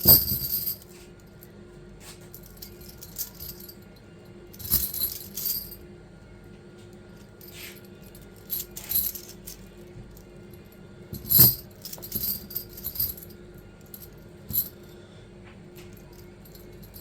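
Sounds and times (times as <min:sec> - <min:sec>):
heavy chain knock: 0:00.0 - 0:00.8
metal chain clinking: 0:00.0 - 0:00.9, 0:02.4 - 0:03.8, 0:04.6 - 0:05.8, 0:07.3 - 0:09.7, 0:11.2 - 0:13.3, 0:13.9 - 0:14.8, 0:16.0 - 0:17.0.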